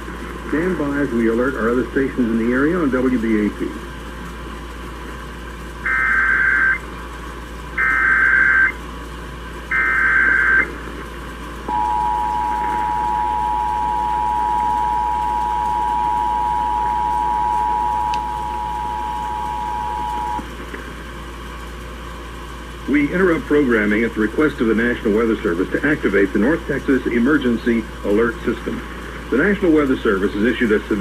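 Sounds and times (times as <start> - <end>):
digital header tone bursts: 5.8 - 6.9, 7.8 - 8.8, 9.7 - 10.7, 11.7 - 20.5
two-tone attention signal: 7.8 - 8.7, 11.7 - 20.4.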